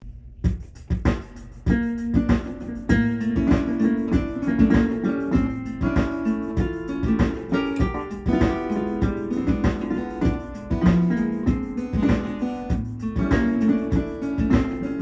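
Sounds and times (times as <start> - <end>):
steady beat: 0.0 - 15.0
keyboard chords: 2.3 - 15.0.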